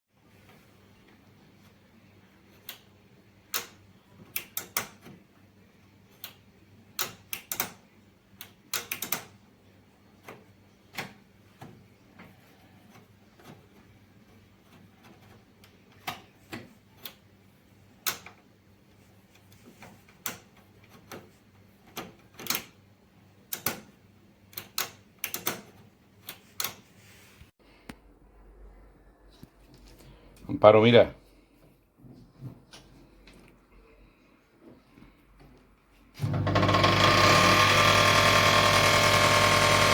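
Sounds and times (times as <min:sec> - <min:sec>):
microwave oven humming: 0:36.2 - 0:39.9.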